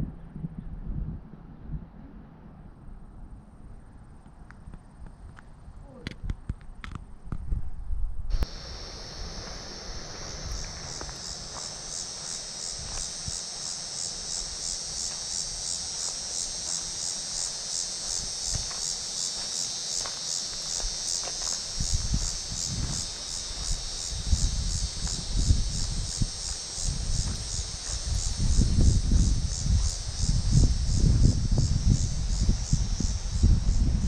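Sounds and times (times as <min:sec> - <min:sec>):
insects trilling in chorus: 0:08.3 - 0:34.0
footsteps thumping: 0:10.4 - 0:13.4, 0:18.1 - 0:23.8.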